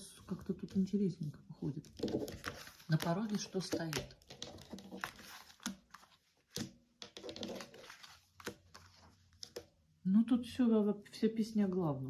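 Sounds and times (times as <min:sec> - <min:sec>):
cards sliding and brushing: 0:02.2 - 0:03.5, 0:04.3 - 0:09.6.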